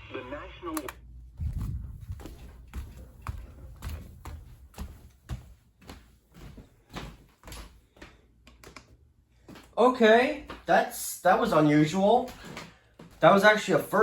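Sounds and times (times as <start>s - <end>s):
low rumble: 1.1s - 4.6s.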